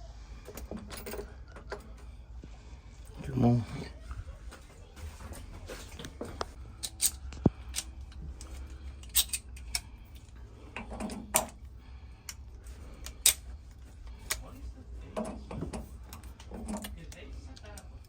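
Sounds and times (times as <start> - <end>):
metal tools clicking and clinking: 0.5 - 2.1, 6.8 - 11.6, 15.2 - 17.8.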